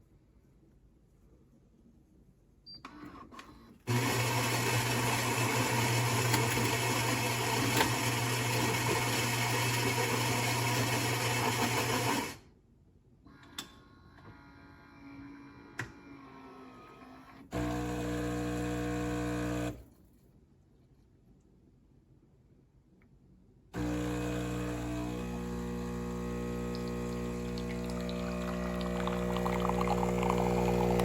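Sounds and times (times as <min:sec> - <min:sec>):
espresso machine whirring: 0:03.9 - 0:12.4, 0:17.5 - 0:19.8, 0:23.8 - 0:31.0.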